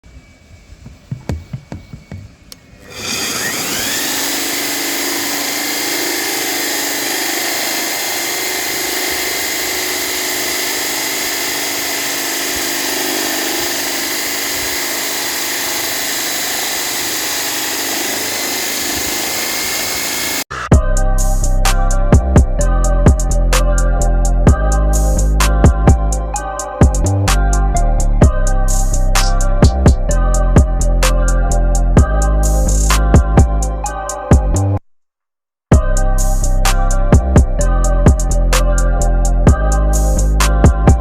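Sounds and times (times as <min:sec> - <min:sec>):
core drill motor whine: 0:02.8 - 0:20.5.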